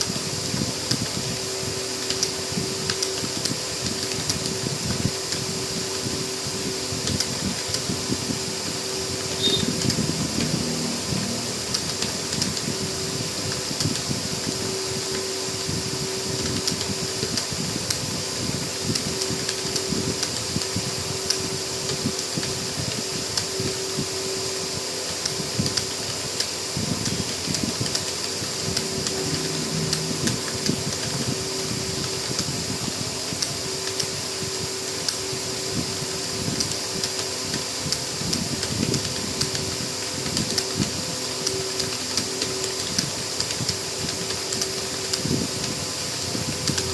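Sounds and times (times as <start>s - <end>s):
steady background hum: 0.0s - 46.9s
fast keyboard typing: 9.1s - 15.3s, 16.3s - 18.0s, 25.2s - 35.3s, 36.0s - 46.9s.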